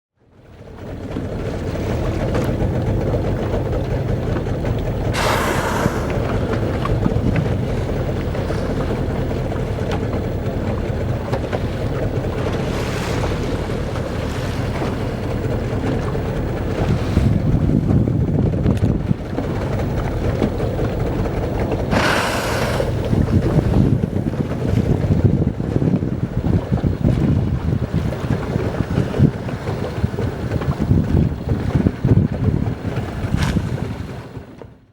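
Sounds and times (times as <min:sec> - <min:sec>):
boat rumble: 0:00.2 - 0:34.9
wind on microphone: 0:01.0 - 0:34.6
whale blowing exhalation: 0:05.1 - 0:07.6, 0:21.8 - 0:24.1.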